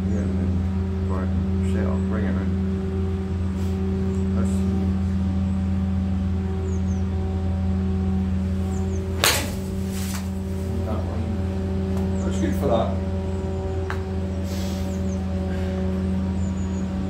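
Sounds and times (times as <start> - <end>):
low mechanical hum: 0.0 - 17.0
golf club striking ball: 8.8 - 10.7.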